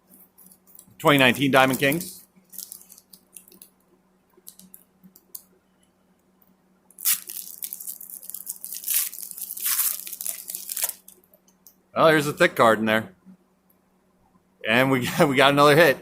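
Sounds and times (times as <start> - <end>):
foil wrapper tearing and crinkling: 1.7 - 3.7, 7.0 - 11.2.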